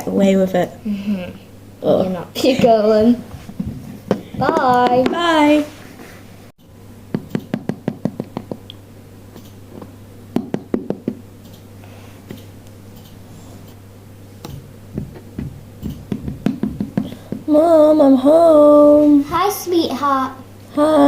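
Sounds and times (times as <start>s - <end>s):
plastic doll tapping on hard surface: 15.0s - 17.4s.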